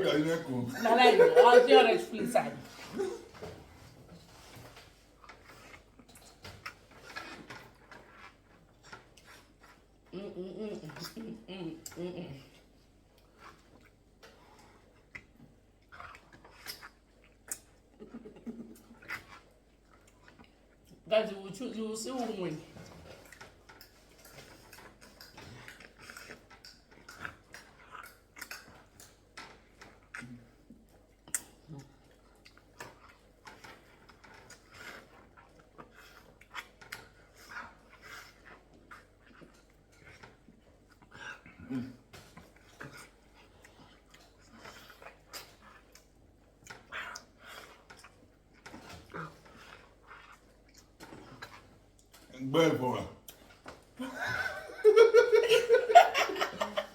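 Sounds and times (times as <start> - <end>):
chewing and eating clicks: 13.1 - 21.1, 22.7 - 52.3.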